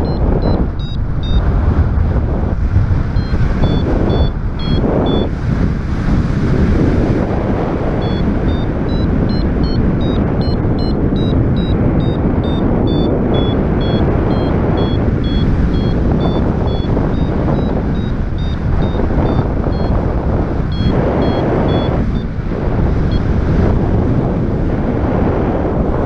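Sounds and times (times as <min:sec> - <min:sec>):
variometer high beeps: 0:00.0 - 0:01.5, 0:03.1 - 0:05.3, 0:07.9 - 0:22.4, 0:23.0 - 0:23.3
wind buffeting microphone: 0:00.0 - 0:26.0.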